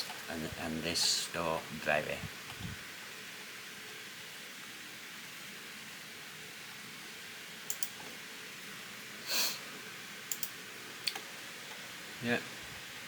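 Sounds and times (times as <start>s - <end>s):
computer mouse clicking: 7.7s - 8.0s, 10.3s - 11.2s
brief hiss: 9.2s - 9.6s.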